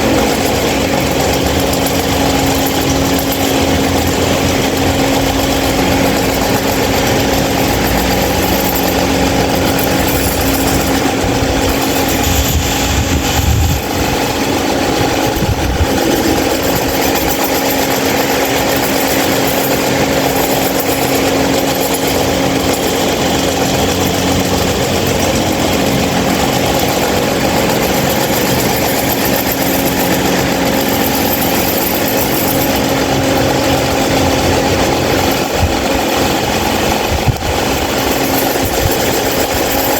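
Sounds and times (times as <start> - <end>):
stand fan running: 0.0 - 39.9
low rumble: 11.0 - 16.5.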